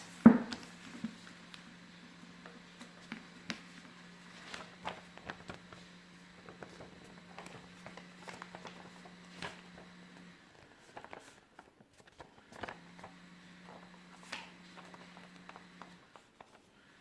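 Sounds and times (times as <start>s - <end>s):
paper being folded: 0.0s - 17.0s.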